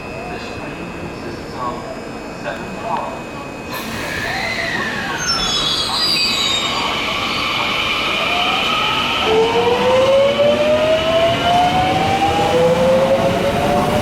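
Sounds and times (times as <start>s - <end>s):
electric train motor whine: 3.7s - 14.0s.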